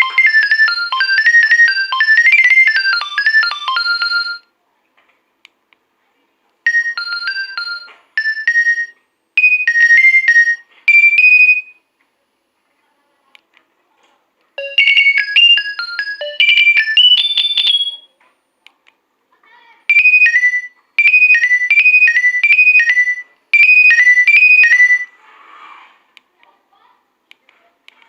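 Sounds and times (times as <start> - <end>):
phone ringtone beeping melody: 0.0 - 4.5, 6.7 - 11.8, 14.6 - 18.1, 19.9 - 25.2.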